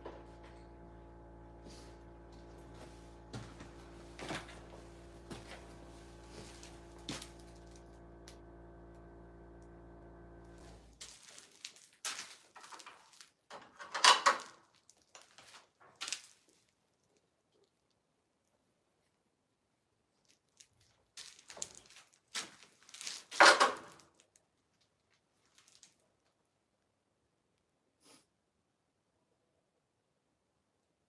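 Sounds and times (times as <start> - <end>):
low electrical hum: 0.0 - 11.7
clicks and metallic rattles: 12.6 - 14.6.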